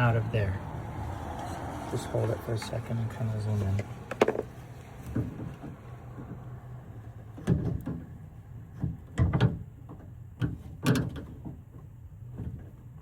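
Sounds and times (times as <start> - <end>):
screwdriver knocks and clicks: 4.1 - 4.5.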